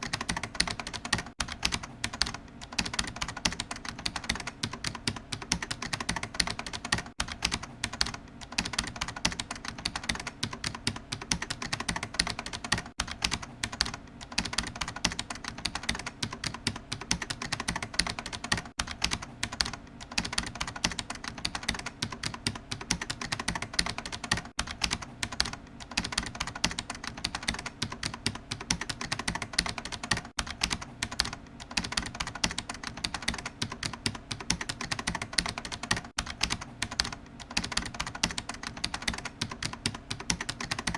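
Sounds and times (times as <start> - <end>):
keyboard typing: 0.0 - 40.9.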